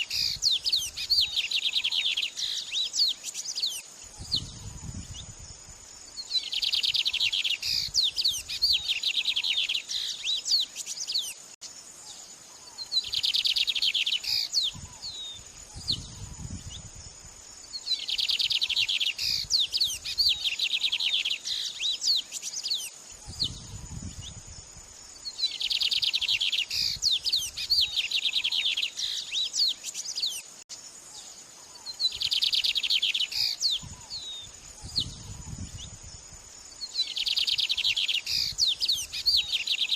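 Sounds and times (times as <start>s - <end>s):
songbird trilling: 0.0s - 5.3s, 6.2s - 11.4s, 17.8s - 24.4s, 25.3s - 30.4s, 31.7s - 36.0s, 36.8s - 39.9s.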